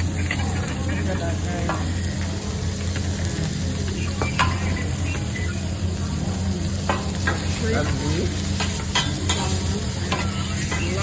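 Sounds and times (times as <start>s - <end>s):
food sizzling on griddle: 0.0s - 11.0s
spatula clinking on metal: 6.9s - 11.0s.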